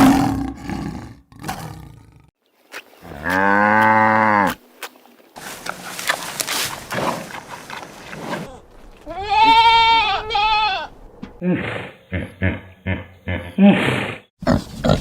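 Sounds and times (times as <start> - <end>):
pig grunting: 5.5 - 8.8, 11.4 - 15.0
farm animal bleating: 8.4 - 10.9.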